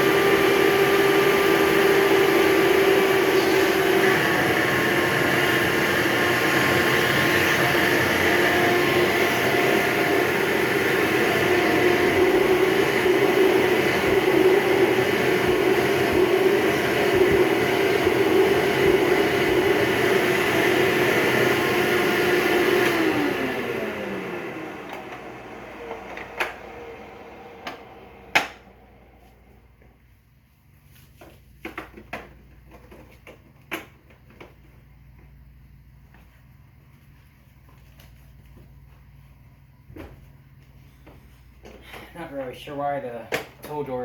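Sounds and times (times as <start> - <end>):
vacuum motor spinning down: 0.0 - 29.6
vacuum cleaner motor whine: 0.0 - 29.9.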